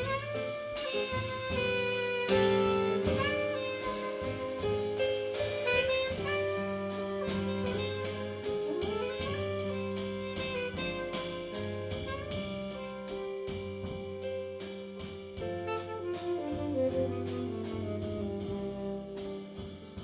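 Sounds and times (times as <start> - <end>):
saxophone melody: 0.0 - 13.0
drums with cymbal strokes: 0.0 - 20.0
walking bass: 0.0 - 20.0.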